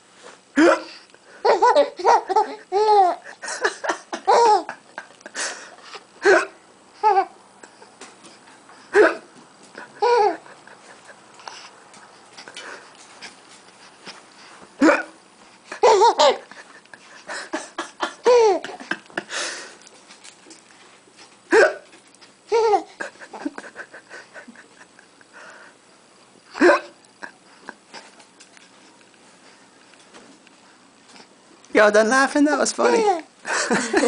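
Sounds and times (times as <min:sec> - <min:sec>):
adult making fake hiccups: 0:00.6 - 0:01.0, 0:06.2 - 0:06.6, 0:08.9 - 0:09.3, 0:14.8 - 0:15.2, 0:21.5 - 0:21.9, 0:26.6 - 0:27.1
baby laughing: 0:01.4 - 0:06.4, 0:07.0 - 0:07.4, 0:09.9 - 0:11.6, 0:15.7 - 0:19.1, 0:22.5 - 0:24.0, 0:32.8 - 0:33.3.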